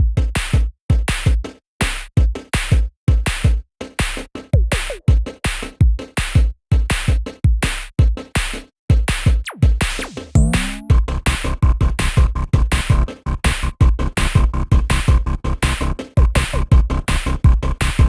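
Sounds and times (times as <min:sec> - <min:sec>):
electronic music with drum-machine beat: 0:00.0 - 0:18.0
falling synth sweeps: 0:10.4 - 0:10.9.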